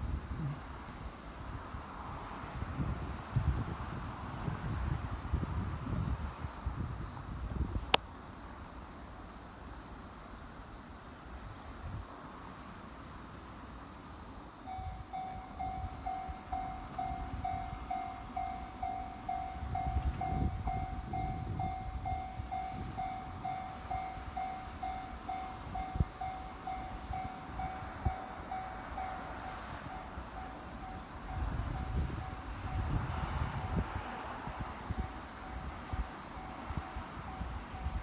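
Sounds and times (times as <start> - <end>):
level-crossing alarm bell: 14.6 - 38.0.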